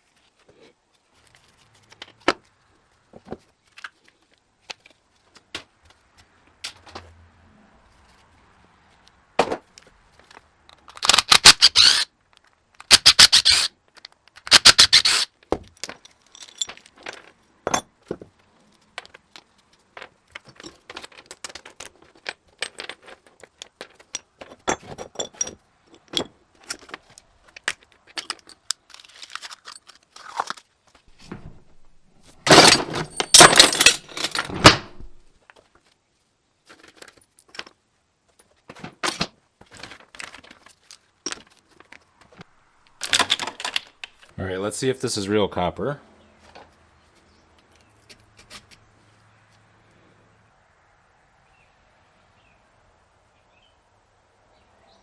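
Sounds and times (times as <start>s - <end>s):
metal parts and tools clinking: 1.1s - 2.2s, 10.2s - 18.0s, 19.0s - 30.7s, 31.7s - 35.3s, 42.9s - 44.3s.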